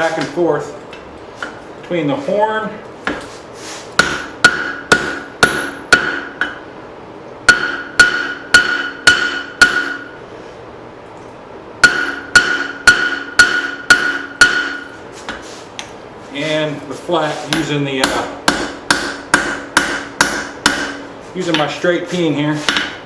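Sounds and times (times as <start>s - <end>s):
hammer striking metal on anvil: 4.0s - 6.6s, 7.5s - 10.2s, 11.8s - 14.9s, 17.5s - 21.7s, 22.6s - 23.0s.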